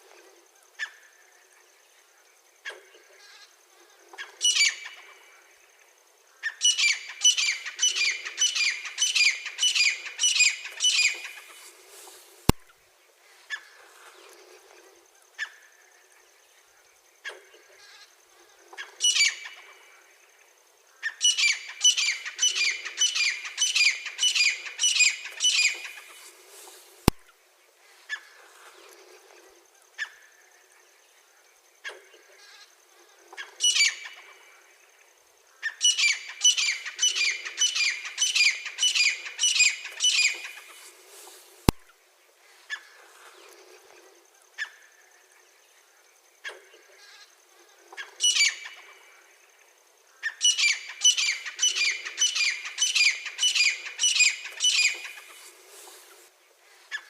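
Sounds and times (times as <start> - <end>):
bird calling shrill notes: 6.6 - 11.6, 21.2 - 26.2, 35.8 - 40.7, 50.4 - 55.3.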